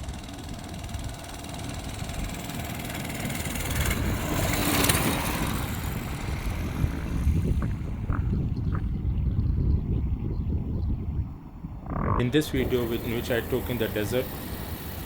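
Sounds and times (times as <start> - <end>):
small petrol engine running: 0.0 - 8.3, 12.4 - 15.0.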